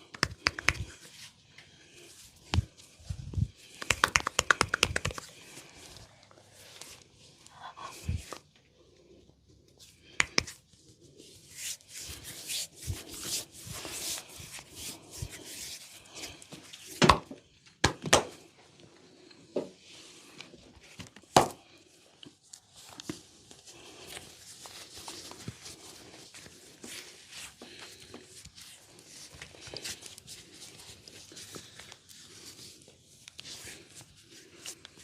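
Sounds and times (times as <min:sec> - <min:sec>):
hands rubbing hair and skin: 0:00.0 - 0:07.0, 0:10.0 - 0:10.6, 0:11.2 - 0:17.0.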